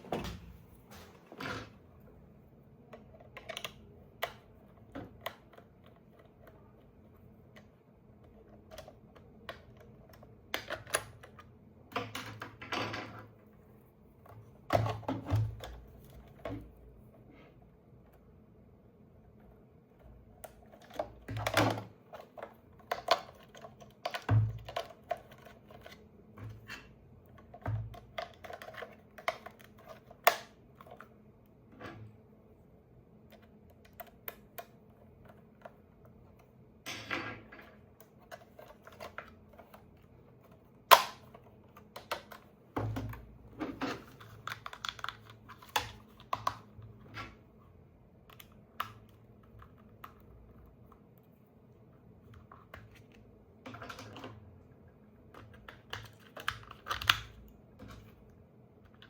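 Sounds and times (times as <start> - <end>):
plastic and cardboard clicks: 38.0 - 43.2, 55.3 - 58.1.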